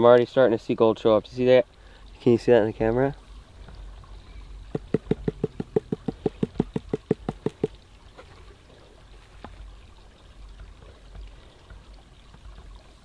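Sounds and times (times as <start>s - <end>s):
water sloshing and trickling: 0.0s - 13.0s
rapid tapping on metal pan: 4.8s - 7.7s.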